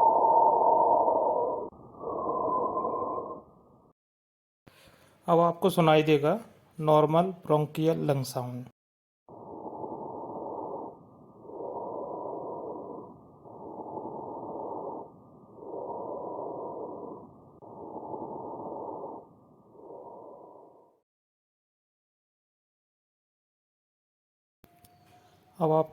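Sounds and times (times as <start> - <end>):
bronchial breath sounds: 4.7 - 5.2, 9.3 - 21.0.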